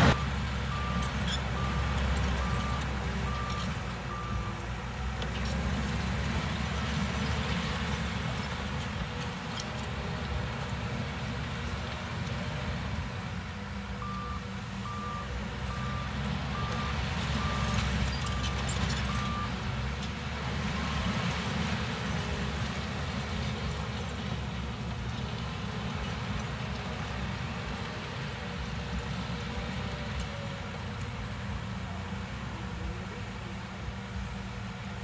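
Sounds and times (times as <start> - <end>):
diesel machinery rumbling: 0.0 - 35.0
reversing alarm beeps: 14.0 - 19.5.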